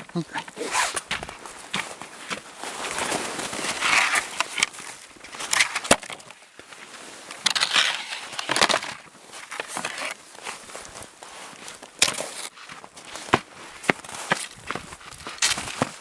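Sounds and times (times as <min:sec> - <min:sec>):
footsteps crunching snow: 0:00.1 - 0:16.0.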